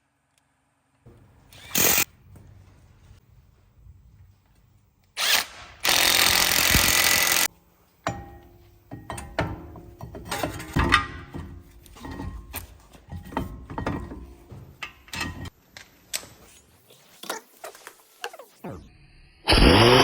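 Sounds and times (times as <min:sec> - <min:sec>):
hand tools clinking on metal: 0:08.0 - 0:15.6.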